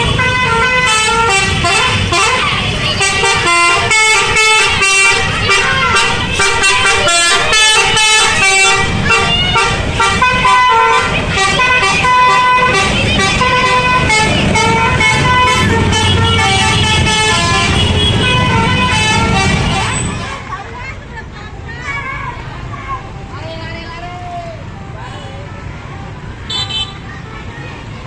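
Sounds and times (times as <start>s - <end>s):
multi-tone air horn melody: 0.0s - 20.4s.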